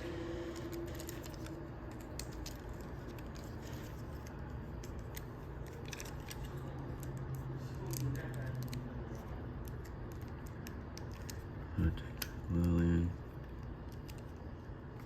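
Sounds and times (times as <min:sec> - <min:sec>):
plastic toy parts clicking: 0:00.6 - 0:11.4.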